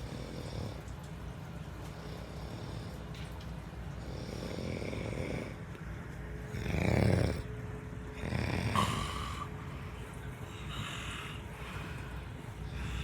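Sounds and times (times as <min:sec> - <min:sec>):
person snoring: 0:06.5 - 0:07.5, 0:08.2 - 0:09.6.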